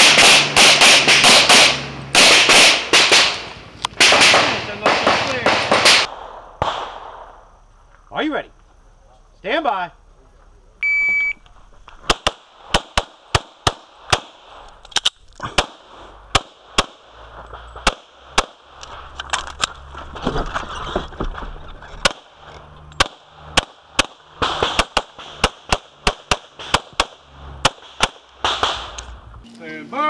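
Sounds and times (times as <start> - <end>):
pistol shots: 0.0 - 7.3, 12.0 - 14.5, 15.5 - 17.2, 17.8 - 18.7, 23.0 - 29.1.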